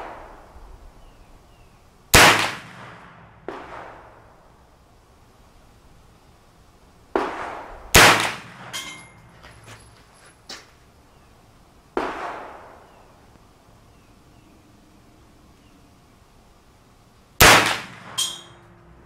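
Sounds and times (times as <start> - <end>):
gunshots echoing: 2.1 - 4.3, 7.1 - 8.9, 12.0 - 12.9, 17.4 - 18.6
light metallic clinks: 8.7 - 10.5, 18.2 - 18.8.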